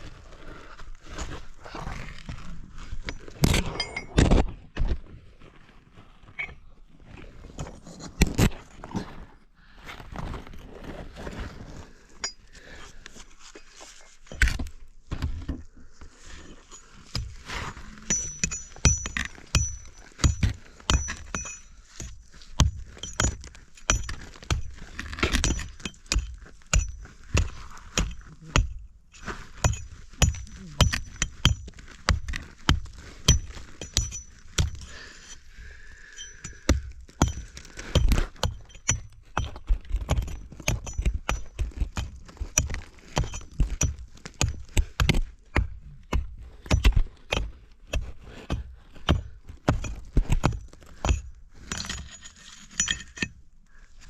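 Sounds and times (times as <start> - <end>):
digging tool striking rock: 3.0 - 4.5, 14.3 - 15.6, 16.8 - 53.4
rock clinking and breaking: 12.2 - 12.5, 16.7 - 35.4, 36.1 - 47.5, 49.1 - 53.4.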